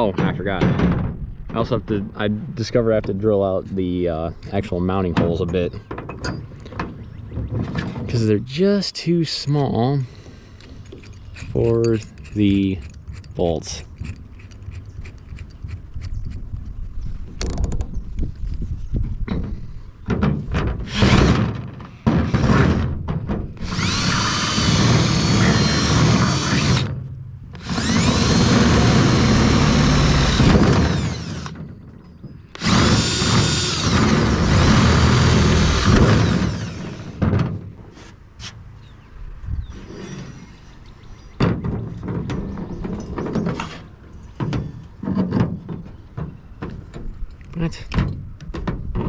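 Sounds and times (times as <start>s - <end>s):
handling clicks and knocks: 4.3s - 8.2s
electric drill running: 20.9s - 21.4s, 23.6s - 26.9s, 27.6s - 31.6s, 32.6s - 37.2s.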